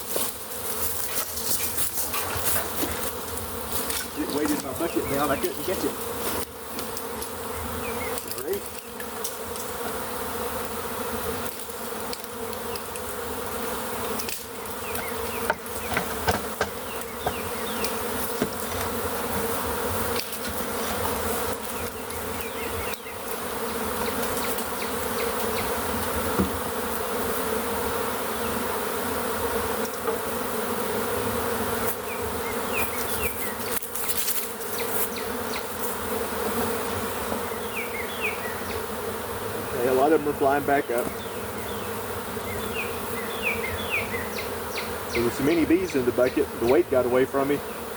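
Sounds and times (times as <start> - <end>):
bees buzzing: 0.0 - 47.9
sharp knocks: 15.5 - 17.4.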